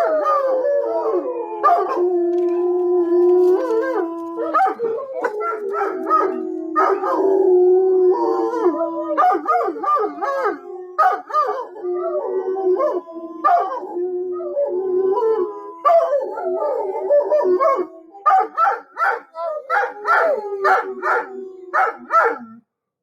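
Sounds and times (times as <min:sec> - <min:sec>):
dogs howling: 0:00.0 - 0:22.6
dogs yelping: 0:01.6 - 0:07.4.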